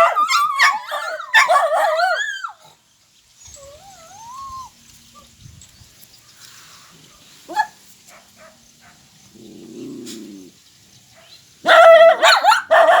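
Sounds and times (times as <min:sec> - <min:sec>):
dogs howling: 0:03.5 - 0:04.7
dog growling: 0:09.4 - 0:10.6
dog yelping: 0:11.7 - 0:13.0.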